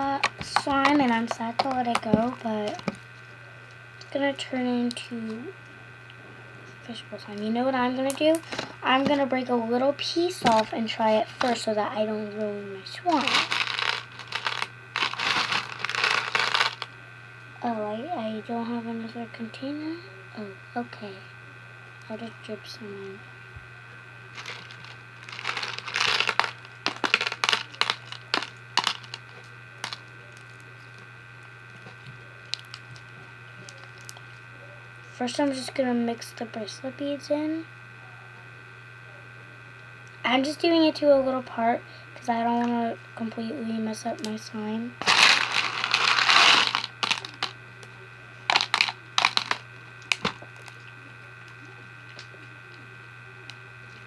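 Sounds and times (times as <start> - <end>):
slime and beads rustling: 0.0 - 3.0, 13.1 - 16.9, 24.4 - 30.0, 45.0 - 47.5, 48.5 - 49.6
sharp clicks and crackles: 13.2 - 16.9, 24.4 - 30.6, 31.7 - 34.2, 45.0 - 47.9, 48.5 - 50.9.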